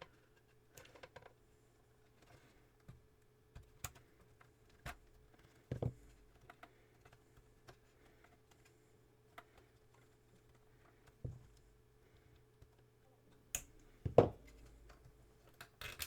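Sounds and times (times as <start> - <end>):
faint steady hum: 5.4 - 16.0
small parts clicking and tapping: 12.6 - 16.0.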